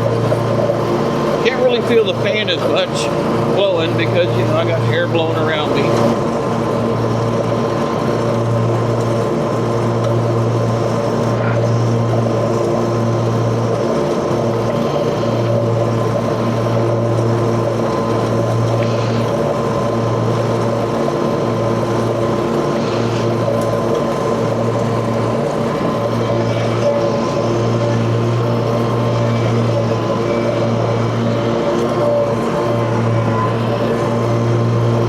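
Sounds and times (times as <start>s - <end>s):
mower engine humming: 0.0s - 35.0s.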